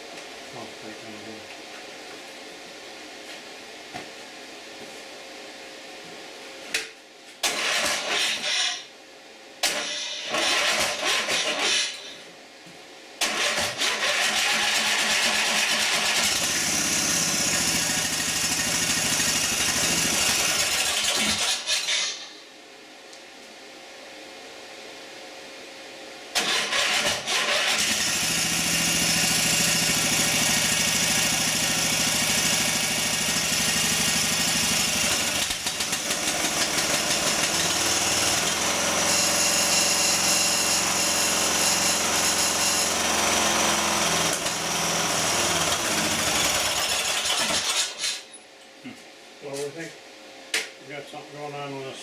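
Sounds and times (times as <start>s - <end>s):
lawn tractor engine running: 13.3s - 21.7s, 26.4s - 39.6s, 40.5s - 48.0s.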